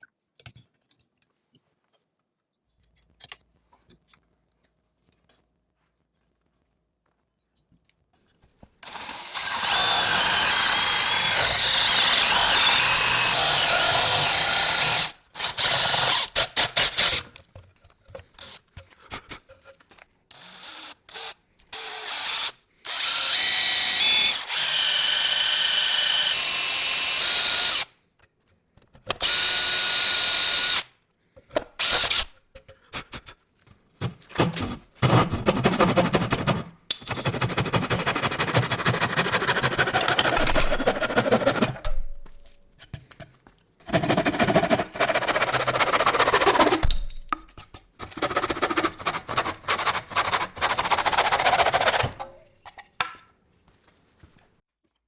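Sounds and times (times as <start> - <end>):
power drill whining: 8.8 - 17.2, 20.3 - 27.9, 29.2 - 30.8, 31.8 - 32.3
rough rapid pulsing: 37.2 - 41.8, 43.9 - 46.9.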